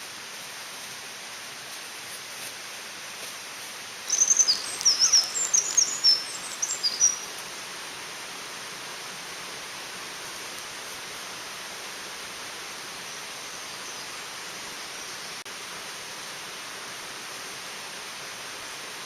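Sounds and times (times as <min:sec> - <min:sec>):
mountain stream rushing: 0:00.0 - 0:19.0
songbird singing high notes: 0:04.1 - 0:07.3.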